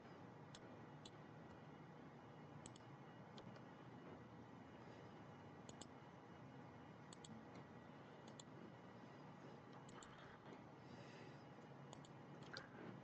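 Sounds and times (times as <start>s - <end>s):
computer mouse clicks: 0.5s - 1.6s, 2.6s - 3.7s, 5.6s - 6.0s, 7.1s - 8.6s, 9.7s - 10.6s, 11.6s - 13.0s.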